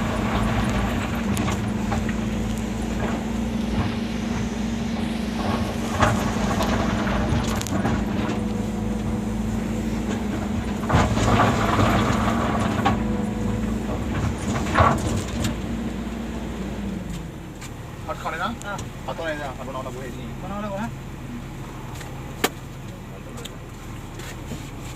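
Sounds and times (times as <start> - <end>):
clanks and knocks: 0.0 - 9.2, 10.0 - 15.8
diesel engine running: 0.0 - 24.9.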